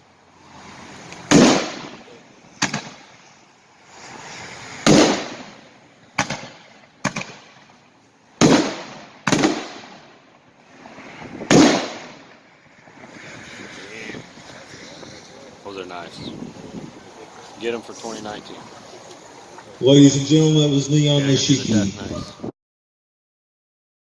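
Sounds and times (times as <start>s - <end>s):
fireworks booming: 1.3s - 3.3s, 4.8s - 7.8s, 8.4s - 12.4s.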